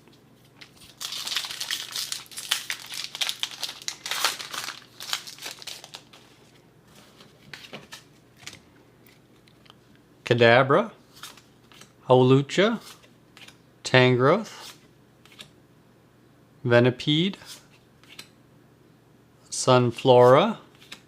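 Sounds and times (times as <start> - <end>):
cards clicking and rustling: 0.5 - 6.4, 15.3 - 15.5, 18.0 - 18.3
foil wrapper crinkling: 0.6 - 6.4.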